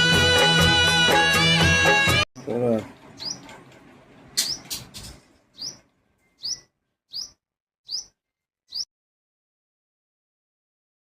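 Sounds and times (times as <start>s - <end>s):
hummingbird chirps: 3.2s - 3.5s, 5.5s - 8.9s.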